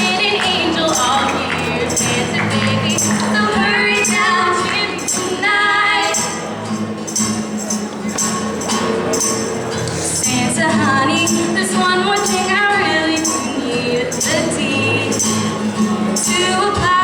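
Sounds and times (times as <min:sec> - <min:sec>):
person singing: 0:00.0 - 0:06.4
tambourine jingling: 0:00.0 - 0:17.0.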